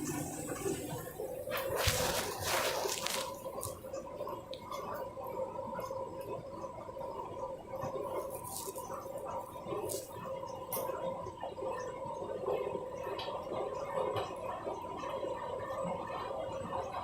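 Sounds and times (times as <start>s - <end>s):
water sloshing in washing machine: 0.0s - 6.4s
washing machine hum: 0.0s - 17.0s.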